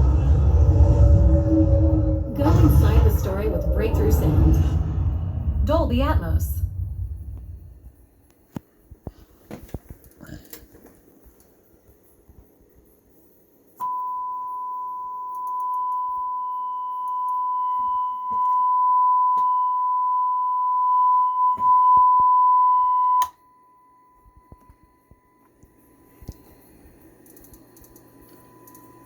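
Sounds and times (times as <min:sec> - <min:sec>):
sine-wave test tone: 0:00.0 - 0:08.4, 0:12.3 - 0:29.0
soft clicks: 0:27.2 - 0:28.9.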